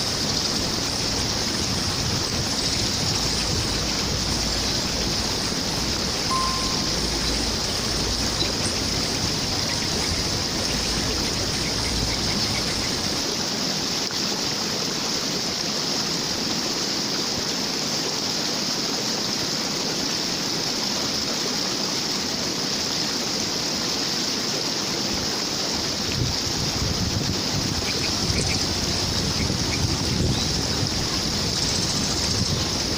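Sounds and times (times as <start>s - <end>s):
deep water rumble: 0.0s - 13.2s, 26.2s - 32.9s
flowing water rushing and babbling: 0.0s - 32.9s.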